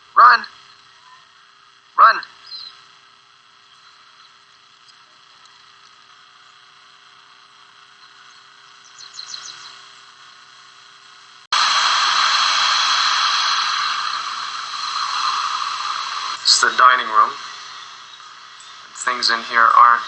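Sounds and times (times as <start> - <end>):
low hiss: 3.7 - 20.0
loud rushing hiss: 11.3 - 20.0.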